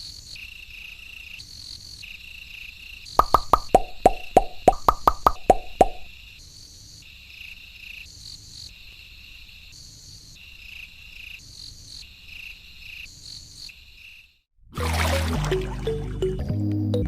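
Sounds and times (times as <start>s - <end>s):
high rhythmic chirping: 3.2s - 6.1s.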